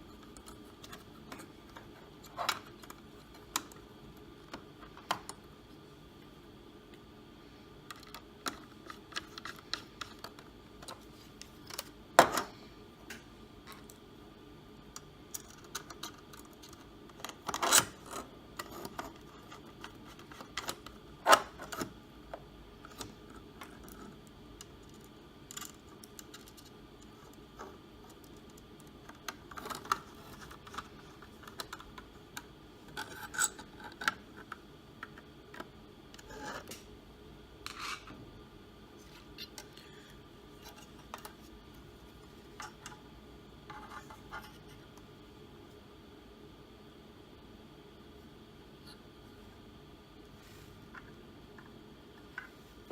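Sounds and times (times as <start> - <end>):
screwdriver clicks and scraping: 32.9 - 34.6.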